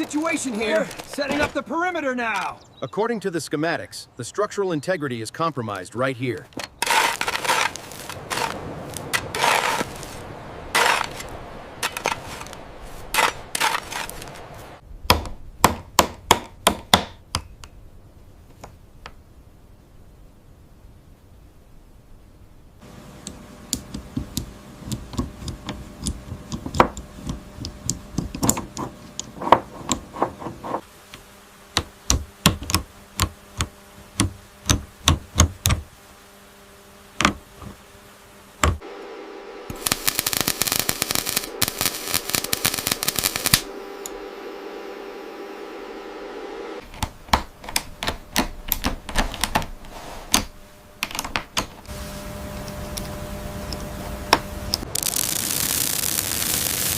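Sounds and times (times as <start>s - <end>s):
hissing noise: 6.4s - 14.8s, 22.8s - 46.9s, 51.9s - 56.9s.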